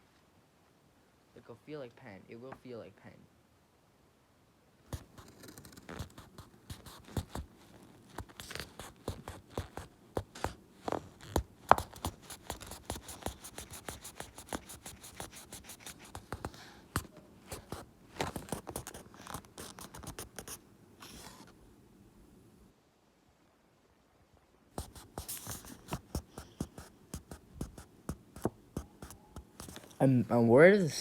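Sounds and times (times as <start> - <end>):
paper rustling and scratching: 4.9 - 21.5, 24.8 - 30.1.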